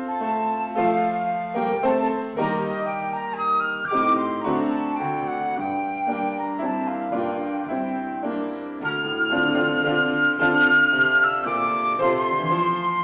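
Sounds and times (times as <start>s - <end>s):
flute melody: 0.0s - 13.0s
keyboard accompaniment: 0.0s - 13.0s.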